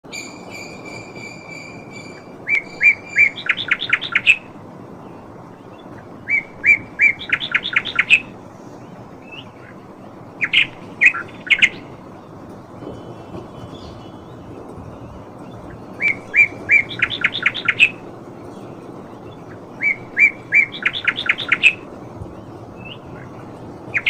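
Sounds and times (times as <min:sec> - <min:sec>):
songbird singing: 0:00.0 - 0:24.0.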